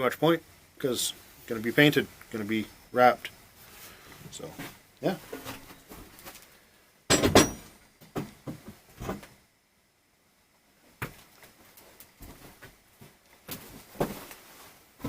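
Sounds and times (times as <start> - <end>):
objects knocking and clattering: 7.1 - 9.3.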